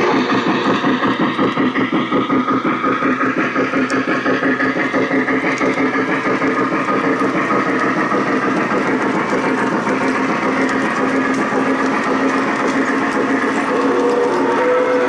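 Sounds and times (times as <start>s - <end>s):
model steam locomotive chuffing: 0.0s - 15.0s
model train cars clattering: 0.0s - 15.0s.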